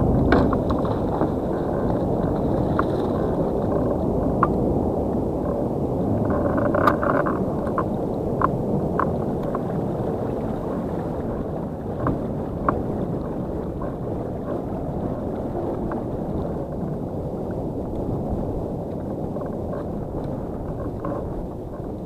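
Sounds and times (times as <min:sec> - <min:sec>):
wind rushing: 0:00.0 - 0:05.3
water rushing around kayak: 0:00.0 - 0:22.0.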